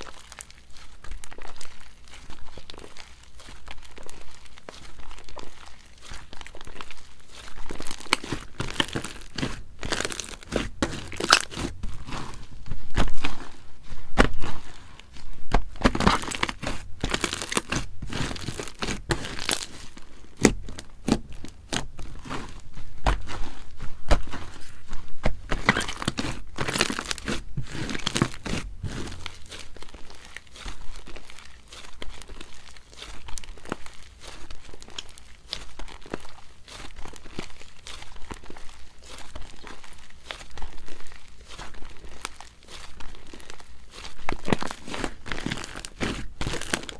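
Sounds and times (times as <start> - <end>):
slime crackling and popping: 0.0 - 46.9.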